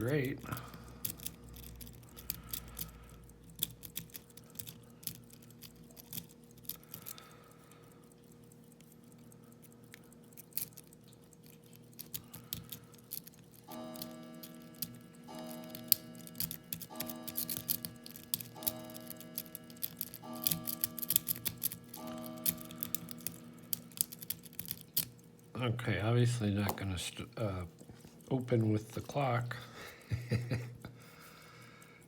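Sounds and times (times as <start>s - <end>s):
lock pick scraping and clicking: 0.5s - 7.2s, 10.4s - 25.3s.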